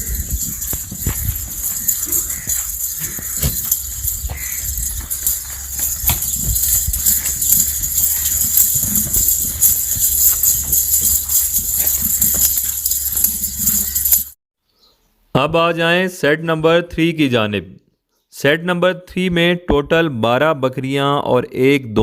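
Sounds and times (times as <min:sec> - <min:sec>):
goat hooves knocking and shuffling: 0:00.0 - 0:14.3
steady low hum: 0:00.0 - 0:14.3.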